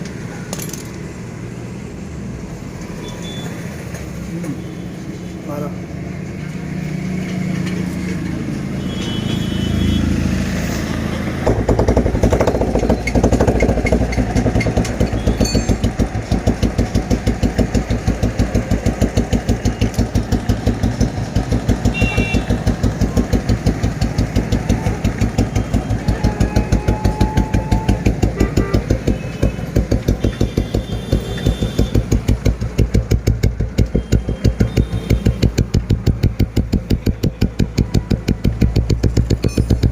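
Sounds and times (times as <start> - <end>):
motorcycle engine idling thump: 28.2 - 39.9.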